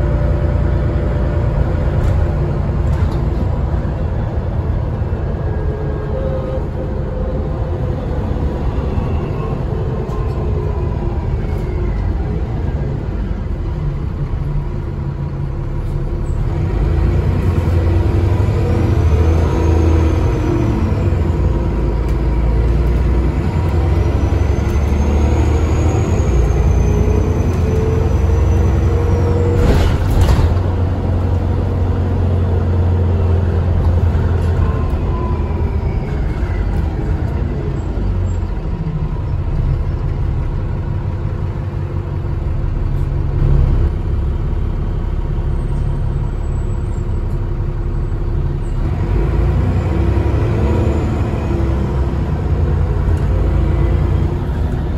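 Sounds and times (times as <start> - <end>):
diesel bus engine drone: 0.0 - 54.9.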